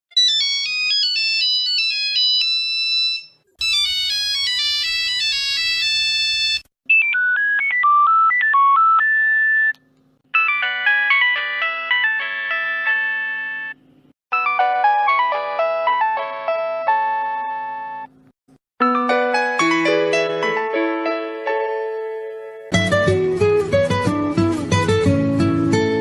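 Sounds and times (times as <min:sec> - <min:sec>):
phone ringtone melodies: 0:00.1 - 0:09.7, 0:10.3 - 0:18.1, 0:18.8 - 0:21.4.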